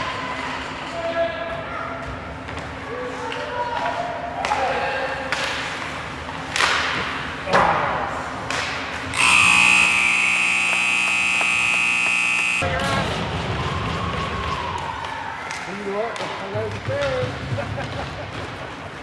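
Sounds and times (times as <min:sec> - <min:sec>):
scoreboard horn blast: 0:09.2 - 0:12.7.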